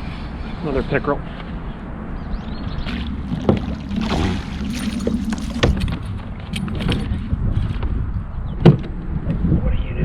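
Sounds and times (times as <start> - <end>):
water splashing: 2.7 - 6.3.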